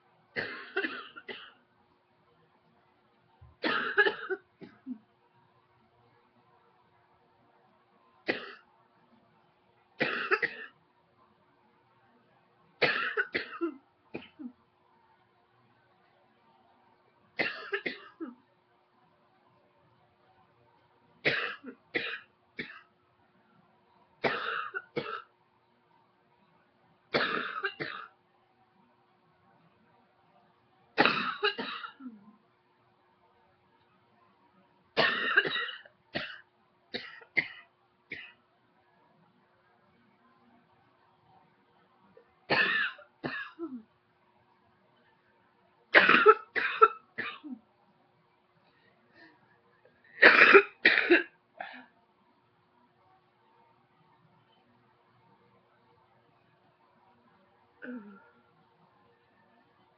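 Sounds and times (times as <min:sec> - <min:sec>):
woman coughing: 0:00.4 - 0:01.6, 0:03.6 - 0:05.0, 0:10.0 - 0:10.7, 0:12.8 - 0:14.6, 0:17.4 - 0:18.4, 0:21.3 - 0:22.9, 0:24.3 - 0:25.3, 0:27.2 - 0:28.1, 0:31.0 - 0:32.2, 0:35.0 - 0:36.4, 0:42.5 - 0:43.8, 0:46.0 - 0:47.6, 0:50.2 - 0:51.9.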